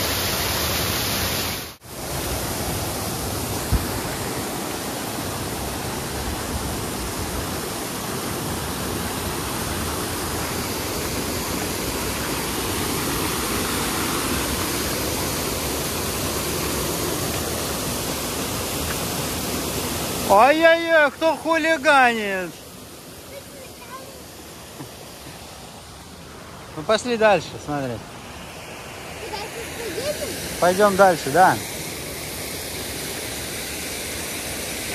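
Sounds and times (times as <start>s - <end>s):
water pouring over waterfall: 0.0s - 22.6s.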